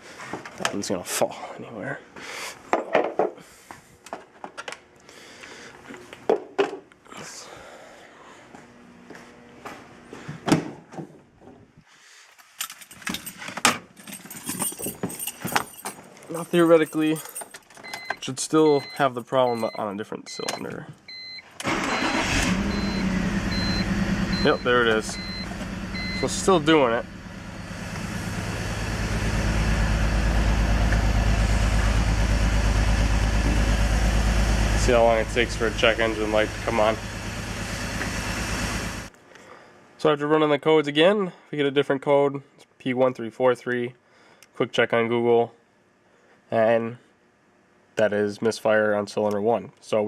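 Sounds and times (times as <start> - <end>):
metallic clicks and jingling: 12.6 - 18.2
car engine idling with misfire: 21.6 - 39.1.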